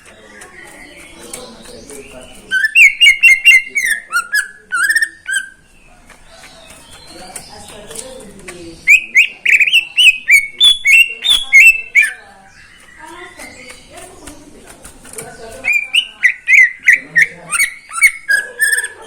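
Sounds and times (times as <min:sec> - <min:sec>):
bird singing whistled notes: 0:01.3 - 0:05.6, 0:08.8 - 0:12.9, 0:15.6 - 0:19.0.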